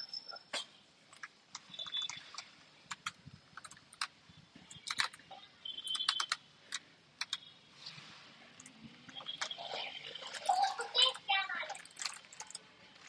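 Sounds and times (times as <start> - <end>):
keyboard keys clicking: 1.2 - 4.1, 4.7 - 7.4.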